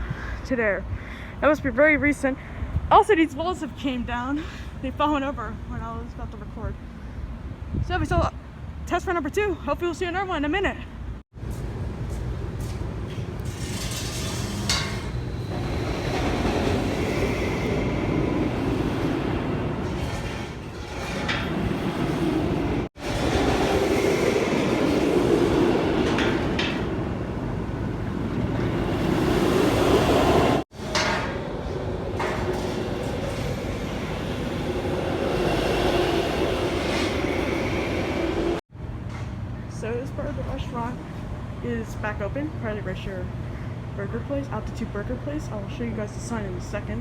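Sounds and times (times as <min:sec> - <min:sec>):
roller coaster rolling rumble: 0:11.6 - 0:38.6.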